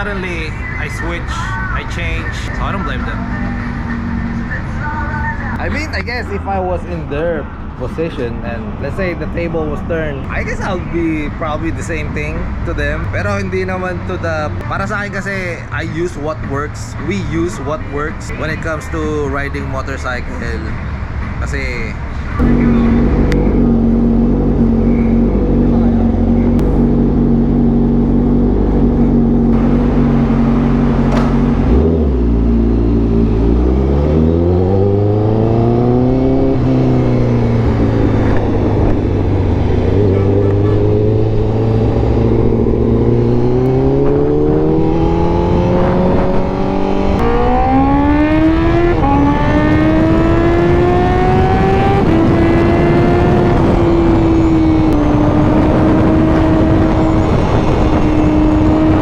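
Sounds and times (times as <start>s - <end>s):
motorcycle engine accelerating: 22.4s - 59.0s.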